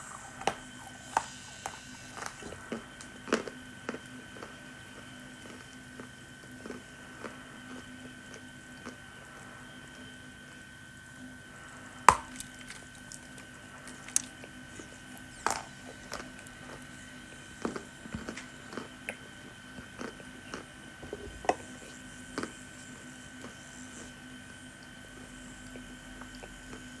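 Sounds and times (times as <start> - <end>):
chewing wet clay: 0.0 - 9.1, 12.1 - 20.7, 24.8 - 27.0.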